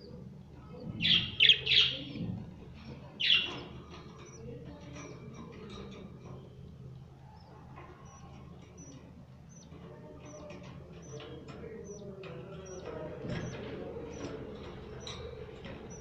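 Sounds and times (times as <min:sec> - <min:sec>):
budgerigars chirping: 0:00.8 - 0:04.6, 0:07.4 - 0:16.0.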